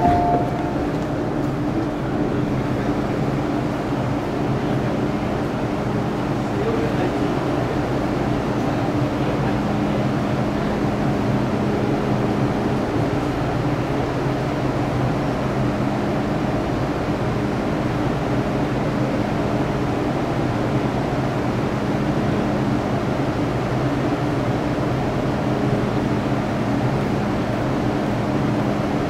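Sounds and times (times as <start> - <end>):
steady low hum tones: 0.0 - 13.3
train running rumble in tunnel: 0.0 - 29.0.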